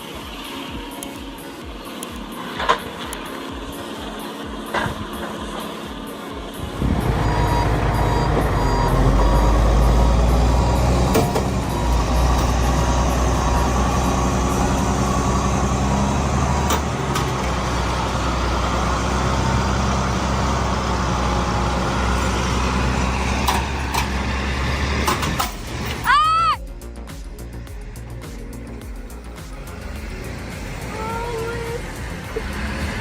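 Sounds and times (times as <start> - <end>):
heavy vehicle engine rumbling: 2.3 - 33.0
sharp metallic clanks: 25.0 - 26.1.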